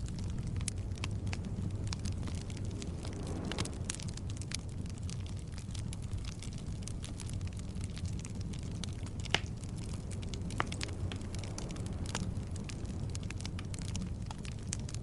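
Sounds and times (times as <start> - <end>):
fire crackling: 0.0 - 15.0
logs burning in fireplace: 0.0 - 15.0.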